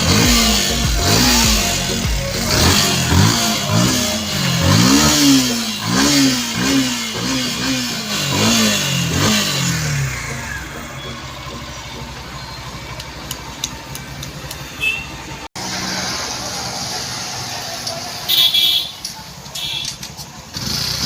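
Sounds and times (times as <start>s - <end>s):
motorcycle engine idling: 0.0s - 15.4s
motorcycle engine revving: 0.0s - 19.1s, 20.1s - 21.0s.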